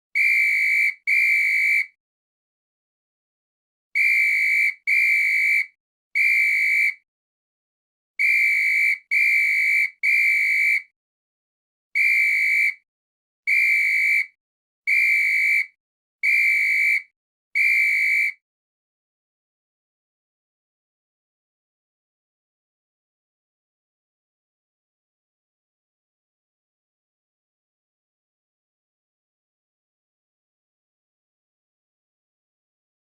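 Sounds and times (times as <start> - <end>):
whistle blasts: 0.2 - 2.0, 4.0 - 7.0, 8.2 - 10.9, 12.0 - 12.8, 13.5 - 18.4.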